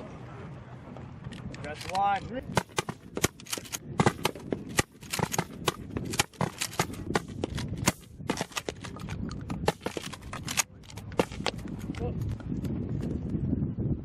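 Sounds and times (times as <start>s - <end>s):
training rounds firing pops: 2.5s - 12.1s.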